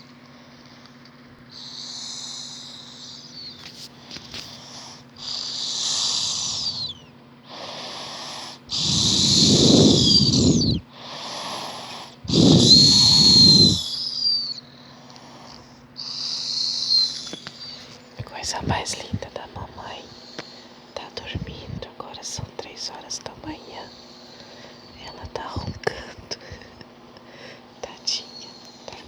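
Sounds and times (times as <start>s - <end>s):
child snoring: 1.6s - 3.5s, 4.5s - 14.5s, 15.2s - 19.1s.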